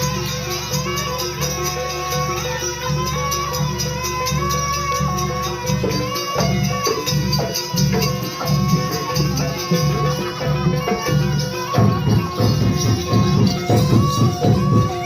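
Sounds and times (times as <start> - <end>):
fast rattling percussion: 0.0 - 15.0
held high tone: 0.0 - 15.0
low drum strokes: 7.8 - 15.0.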